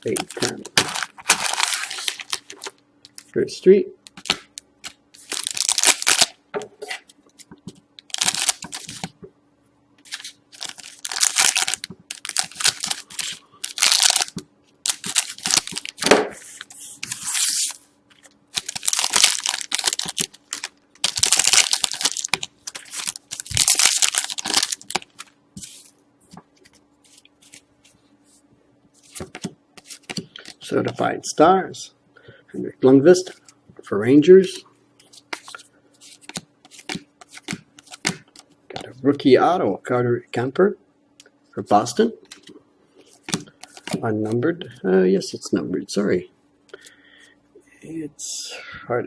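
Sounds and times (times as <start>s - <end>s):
card pack wrappers tearing: 0.0s - 2.8s, 4.2s - 6.4s, 8.0s - 9.1s, 10.0s - 25.9s.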